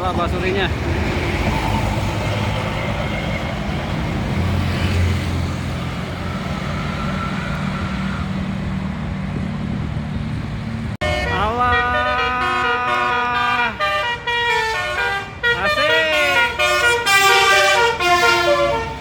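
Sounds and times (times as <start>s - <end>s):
road traffic engines: 0.0s - 19.0s
multi-tone bus horn: 11.0s - 19.0s.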